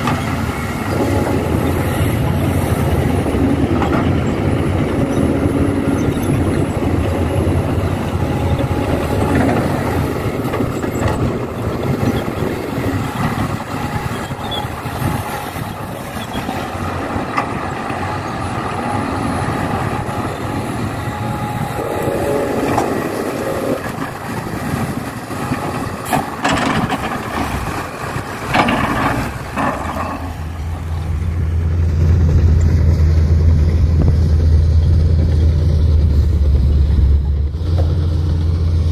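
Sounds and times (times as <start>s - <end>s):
excavator engine running: 0.0s - 38.9s
deep engine hum: 30.6s - 38.9s.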